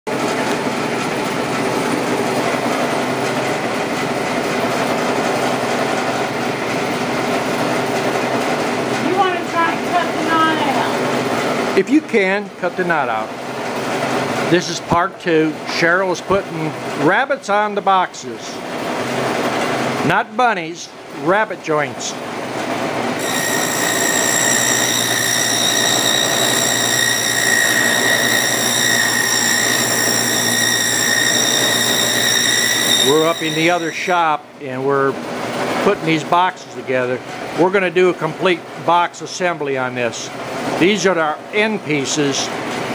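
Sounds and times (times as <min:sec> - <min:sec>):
power saw cutting wood: 0:23.2 - 0:34.2.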